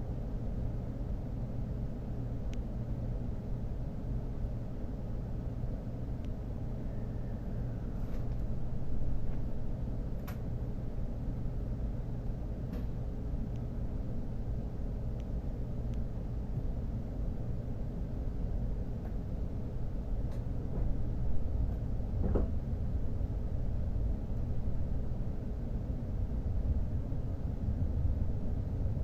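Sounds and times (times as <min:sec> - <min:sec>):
faint steady hum: 0:00.0 - 0:29.0
train running rumble: 0:00.0 - 0:29.0
light ticks: 0:02.5 - 0:02.7.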